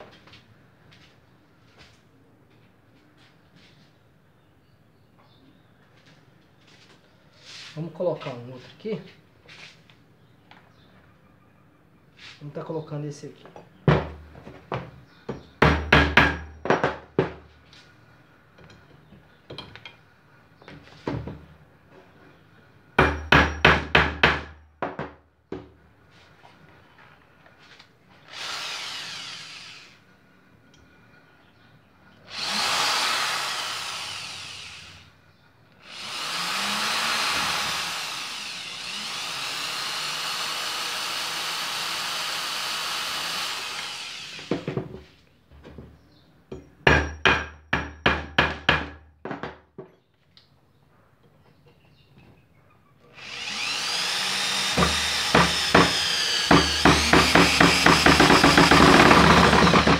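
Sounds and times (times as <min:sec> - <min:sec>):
drill driving screw into wood: 0:28.2 - 0:30.0, 0:32.3 - 0:35.1, 0:35.8 - 0:44.7, 0:53.2 - 0:59.9.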